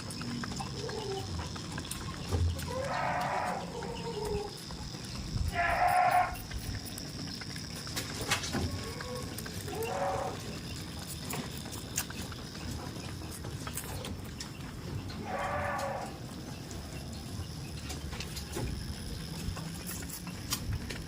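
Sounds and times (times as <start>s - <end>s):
goats bleating: 2.6s - 4.6s, 5.4s - 6.5s, 8.7s - 10.6s, 15.2s - 16.3s.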